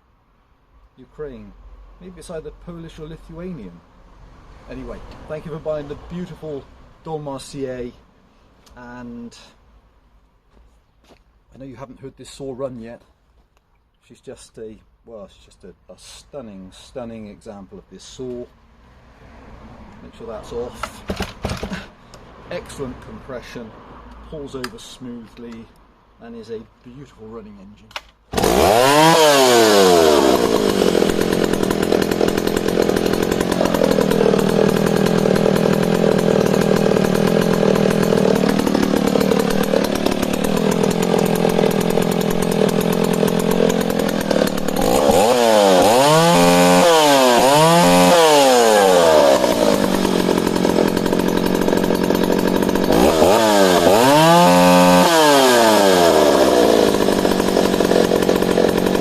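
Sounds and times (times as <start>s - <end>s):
chainsaw revving: 28.3s - 59.0s.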